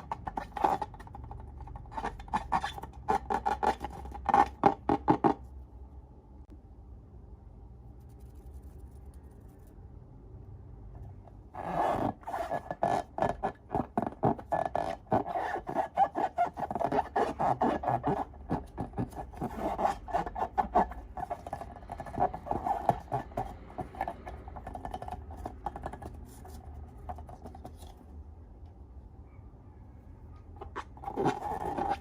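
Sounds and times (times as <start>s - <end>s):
crackling and scraping of materials: 30.6s - 32.0s.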